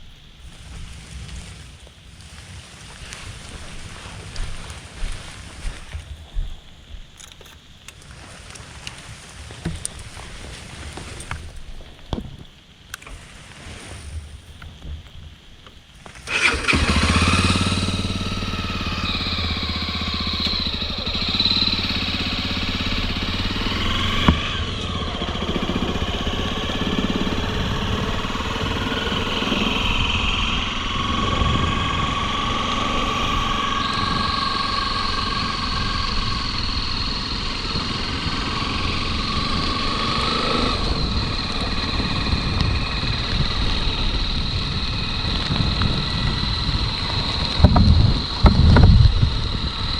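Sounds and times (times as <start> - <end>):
motorcycle engine revving: 16.1 - 49.9.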